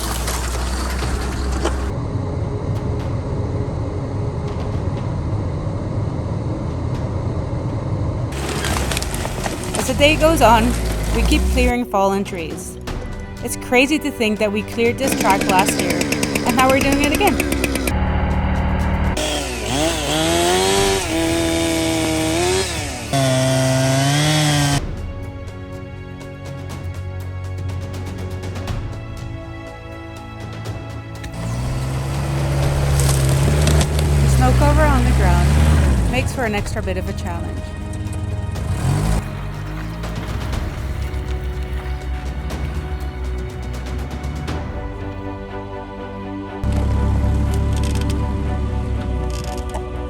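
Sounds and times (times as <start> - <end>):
truck driving over snowy trail: 0.0 - 25.2, 31.0 - 45.4, 46.6 - 50.0
chainsaw running at high revs: 14.8 - 18.1, 19.2 - 24.9, 31.3 - 36.4, 37.4 - 39.4
rustling and clicking noise: 49.0 - 49.9.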